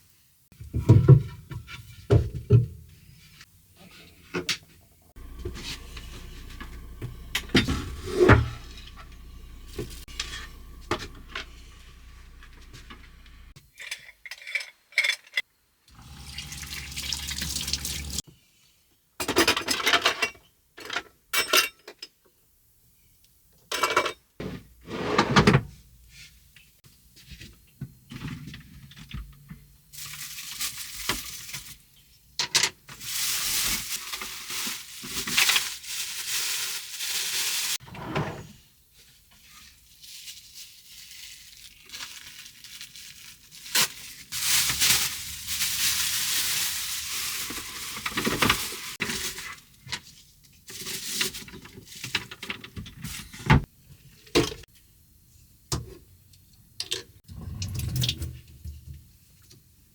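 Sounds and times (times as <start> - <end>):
running water: 15.9 - 18.2.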